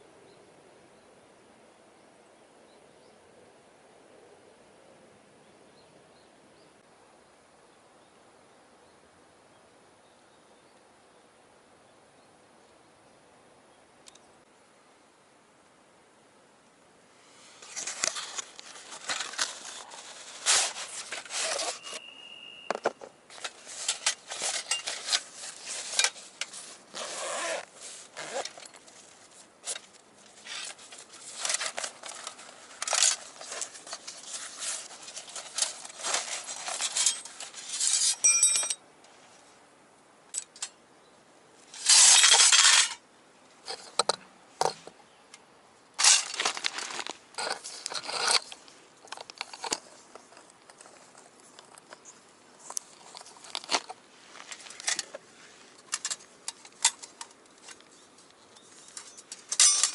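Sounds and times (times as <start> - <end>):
metal panels clinking and scraping: 17.6 - 22.0, 22.8 - 38.8, 41.7 - 43.0, 46.0 - 51.0, 53.0 - 55.2, 55.8 - 57.8, 58.8 - 59.9.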